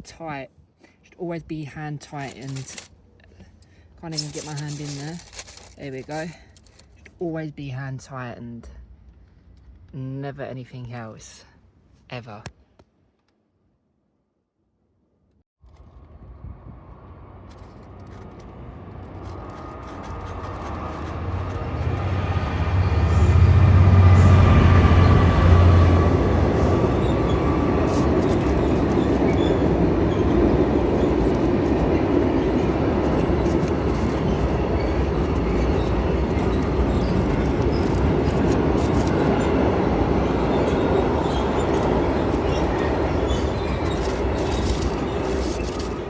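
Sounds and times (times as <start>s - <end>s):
train passing: 18.5s - 46.0s.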